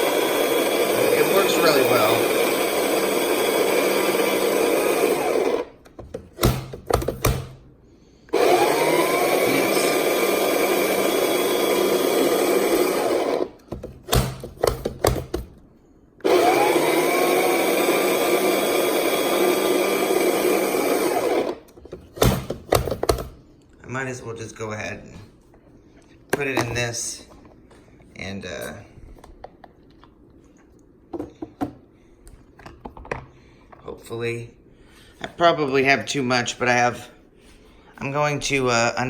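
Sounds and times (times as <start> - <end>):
electric grinder grinding seeds: 0.0 - 5.8, 8.3 - 13.6, 16.2 - 21.7
sharp clicks and knocks: 5.8 - 7.6, 13.6 - 15.6, 21.7 - 23.4.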